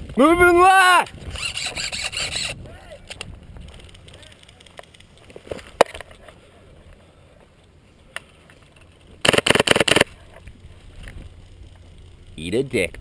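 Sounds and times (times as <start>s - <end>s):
airsoft full-auto burst: 9.2s - 10.2s
airsoft rifle shots: 9.2s - 10.2s.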